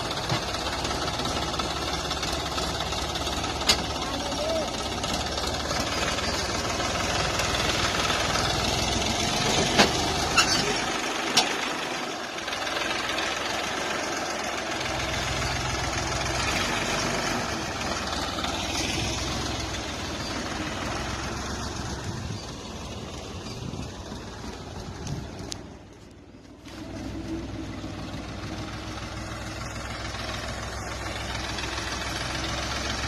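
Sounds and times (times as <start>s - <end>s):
tractor diesel engine running: 0.0s - 33.0s.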